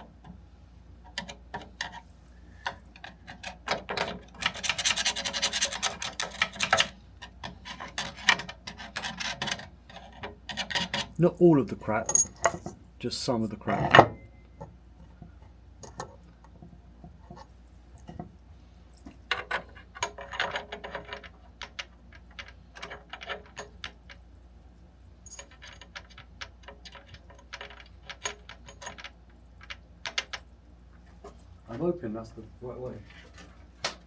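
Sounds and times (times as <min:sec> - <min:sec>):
faint low hum: 0:00.0 - 0:34.0
small tools clinking on metal: 0:12.0 - 0:12.8, 0:15.8 - 0:16.3.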